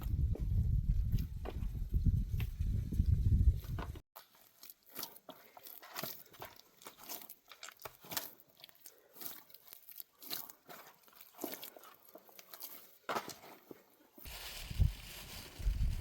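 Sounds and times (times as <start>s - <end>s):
light crunching and crackling: 3.6s - 16.0s.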